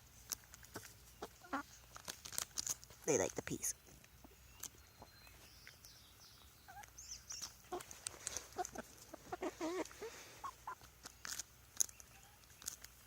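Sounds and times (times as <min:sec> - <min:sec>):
chickens clucking: 0:00.0 - 0:03.2, 0:04.0 - 0:13.0
sharp pecking clicks: 0:10.9 - 0:13.0.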